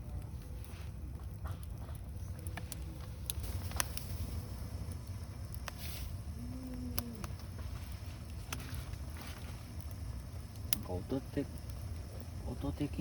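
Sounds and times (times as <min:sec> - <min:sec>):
steady low rumble: 0:00.0 - 0:13.0
wood fire crackling and popping: 0:00.0 - 0:13.0
low moaning tone: 0:06.3 - 0:07.8.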